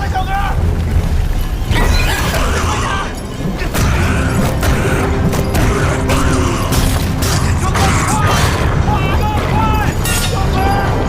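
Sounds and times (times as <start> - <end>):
background music: 0.0 - 11.0
deep continuous rumble: 0.0 - 11.0.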